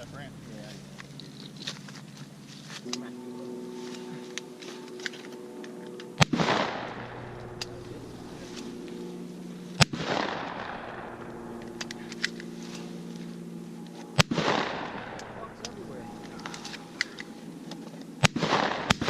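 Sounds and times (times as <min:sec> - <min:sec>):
long rolling echo: 0:00.0 - 0:19.0
shotgun shots: 0:06.2 - 0:08.7, 0:09.8 - 0:12.4, 0:14.2 - 0:17.3, 0:18.2 - 0:19.0.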